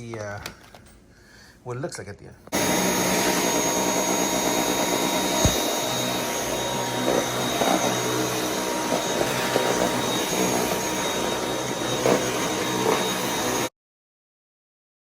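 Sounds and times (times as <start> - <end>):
vacuum cleaner running: 2.5 - 13.7.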